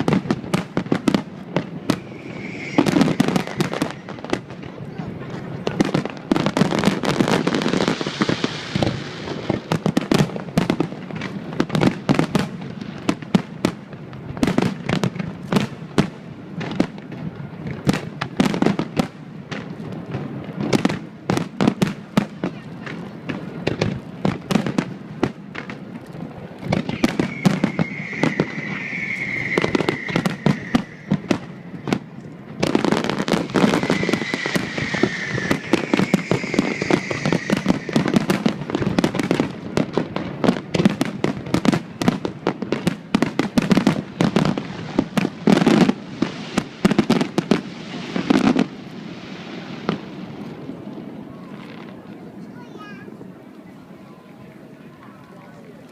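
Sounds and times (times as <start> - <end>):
fireworks bangs and crackling: 0.0 - 55.9
high wavering whistle: 1.8 - 4.6, 26.8 - 32.0, 33.3 - 38.4.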